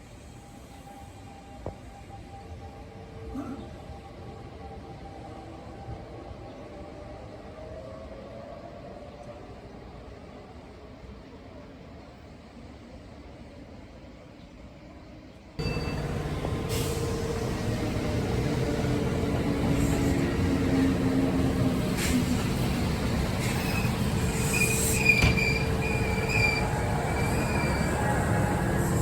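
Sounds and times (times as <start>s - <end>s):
electric train running: 15.6s - 29.0s
wheel squeal on rails: 21.9s - 29.0s.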